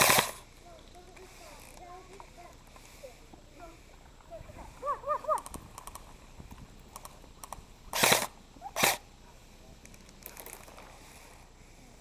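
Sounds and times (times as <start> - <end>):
faint clicks: 5.3 - 7.6
loud crunches: 7.0 - 9.0.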